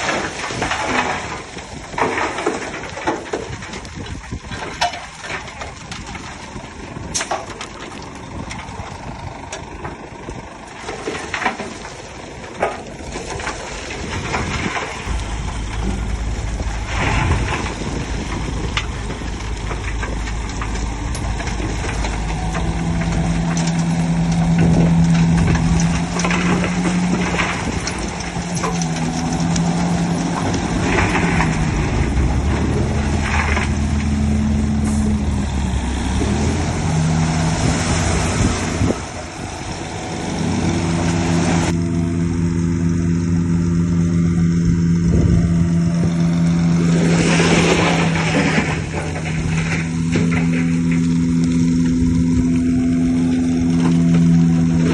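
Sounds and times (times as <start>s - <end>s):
knocks and clanks: 0.0s - 8.8s, 10.8s - 36.6s, 47.1s - 54.9s
heavy diesel engine running: 0.0s - 54.9s.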